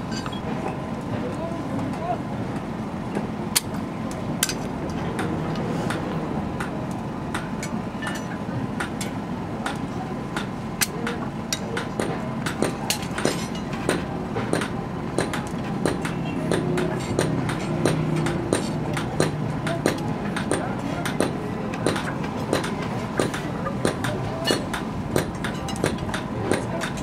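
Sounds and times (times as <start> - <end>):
hammer tapping on metal: 11.8 - 27.0.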